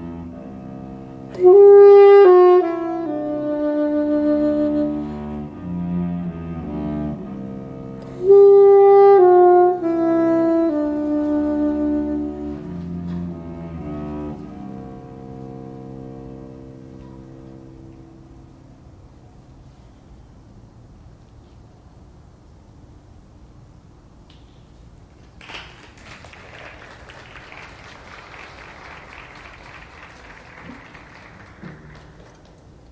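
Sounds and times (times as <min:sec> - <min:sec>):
saxophone: 0:00.0 - 0:20.2
cello low sustained notes: 0:00.0 - 0:20.6
audience applauding: 0:25.4 - 0:32.9.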